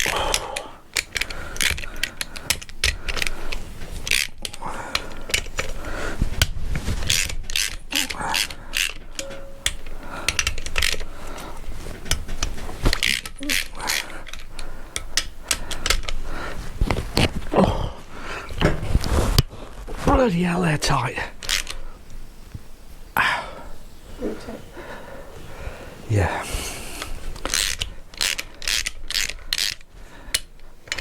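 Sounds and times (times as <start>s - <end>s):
ratchet spanner clicking: 7.1s - 11.4s, 27.4s - 31.0s.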